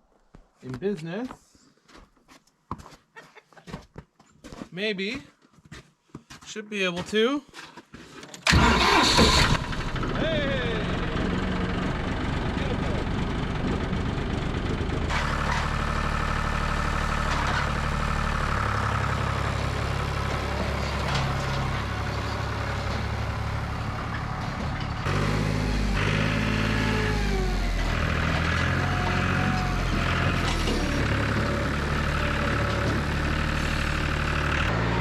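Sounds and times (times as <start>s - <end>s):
engine idling: 8.5s - 35.0s.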